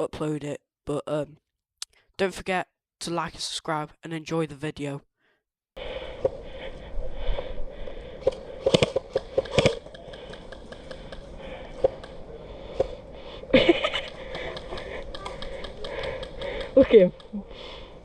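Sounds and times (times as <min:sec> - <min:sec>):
sharp knocks and clicks: 0:08.2 - 0:12.2, 0:14.0 - 0:17.4.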